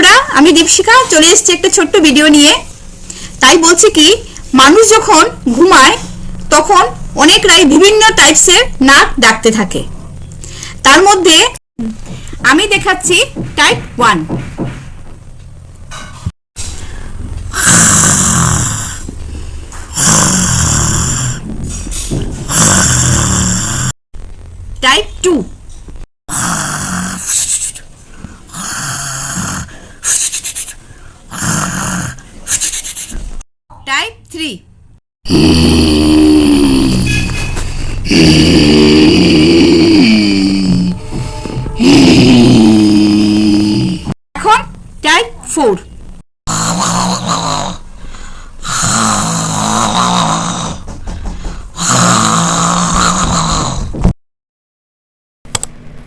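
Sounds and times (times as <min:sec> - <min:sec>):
breath hissing out: 0:16.6 - 0:23.9, 0:46.5 - 0:54.0
person imitating snoring: 0:17.5 - 0:19.2, 0:19.8 - 0:21.5, 0:22.5 - 0:23.9, 0:26.3 - 0:27.8, 0:28.5 - 0:30.4, 0:31.3 - 0:32.8, 0:35.3 - 0:44.2, 0:46.5 - 0:47.9, 0:48.6 - 0:50.9, 0:51.8 - 0:54.2.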